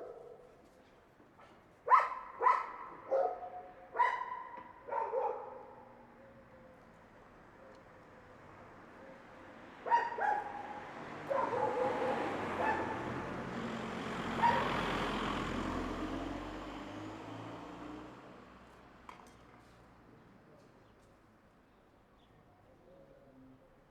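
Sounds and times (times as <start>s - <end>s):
dog barking: 0.0s - 0.5s, 1.8s - 5.9s, 9.8s - 13.1s, 14.4s - 14.8s
passing vehicle: 10.6s - 19.1s.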